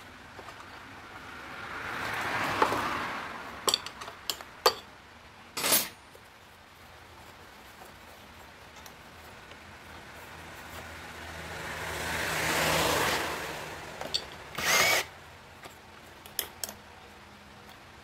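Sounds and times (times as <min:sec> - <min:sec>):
power drill running: 0:14.5 - 0:15.1.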